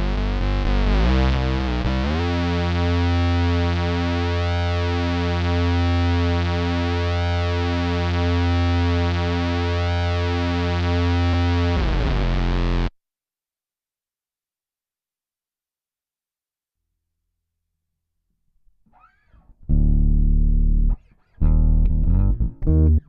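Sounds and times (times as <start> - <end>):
synth bass with filter sweep: 0.0 - 12.9, 19.7 - 23.0.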